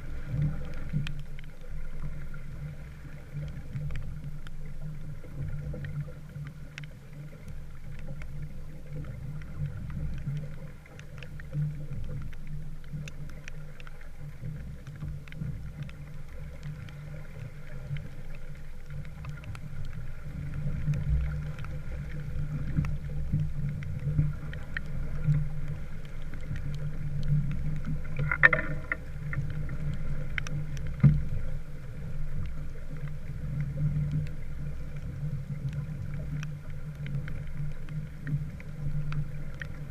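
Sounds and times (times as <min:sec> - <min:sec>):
faint ticks: 0:00.0 - 0:39.9
water rumbling around hull: 0:00.0 - 0:39.9.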